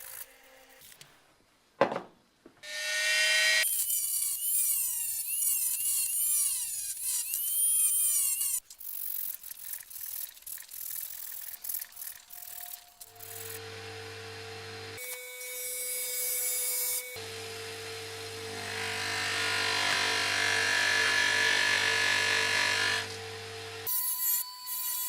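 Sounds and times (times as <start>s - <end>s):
thump: 1.8s - 2.2s
small power tool whining: 2.6s - 8.6s, 11.8s - 25.0s.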